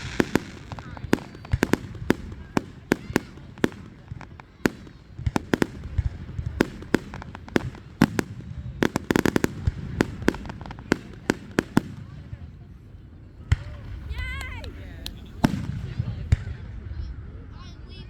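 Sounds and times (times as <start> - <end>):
fireworks crackling: 0.0 - 16.5
fireworks bangs: 0.0 - 16.7.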